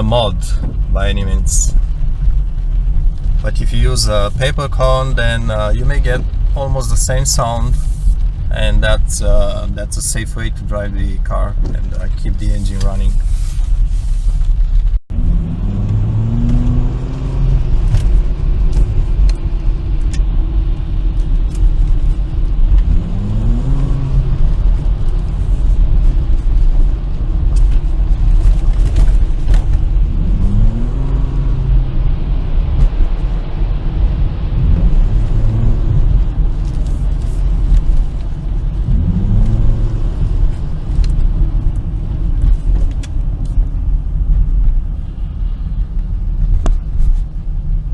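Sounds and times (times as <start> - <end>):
car engine revving: 15.1 - 43.1.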